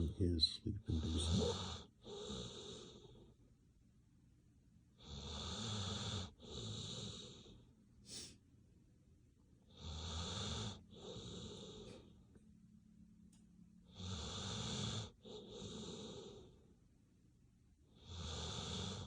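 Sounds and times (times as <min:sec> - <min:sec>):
dog snoring: 0:00.9 - 0:03.3, 0:05.0 - 0:08.3, 0:09.7 - 0:12.1, 0:13.8 - 0:16.7, 0:17.9 - 0:19.0.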